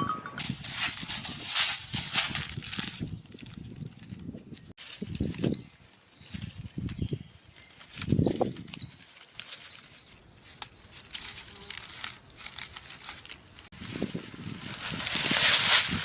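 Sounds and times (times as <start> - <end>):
bird chirping rapidly: 4.2 - 11.3.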